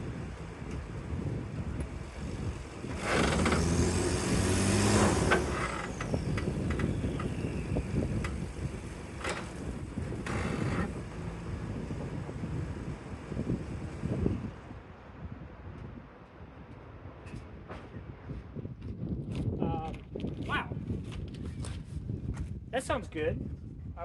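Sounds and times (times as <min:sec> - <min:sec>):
turbocharged engine revving: 0:02.2 - 0:13.5.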